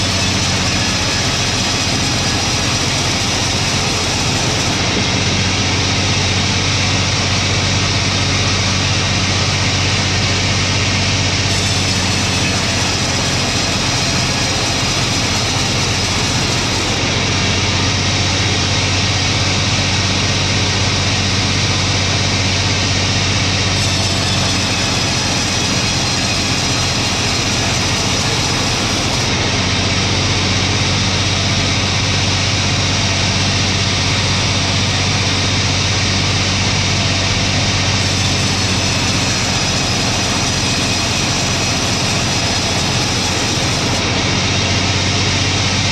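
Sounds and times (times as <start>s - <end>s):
saw cutting hiss: 0.0s - 5.8s, 11.5s - 17.1s, 23.8s - 29.4s, 38.0s - 44.1s
sawmill engine hum: 0.0s - 45.9s.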